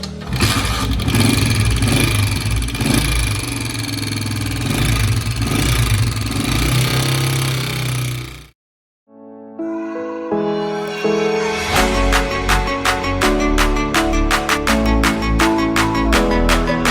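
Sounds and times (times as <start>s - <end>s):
motorcycle engine with mechanical clatter: 0.0s - 8.6s.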